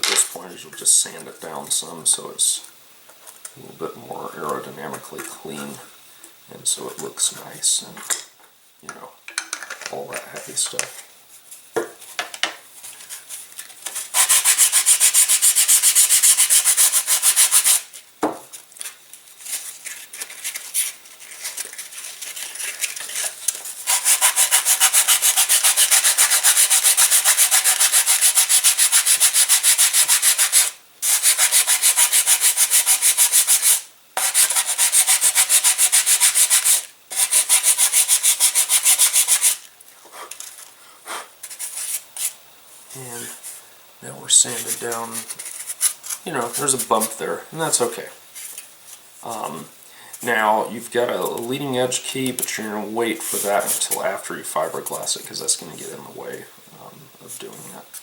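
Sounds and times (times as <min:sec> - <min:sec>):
sandpaper scraping wood: 0:13.9 - 0:17.9, 0:19.5 - 0:40.4, 0:41.4 - 0:42.4, 0:44.3 - 0:48.6, 0:52.5 - 0:54.2.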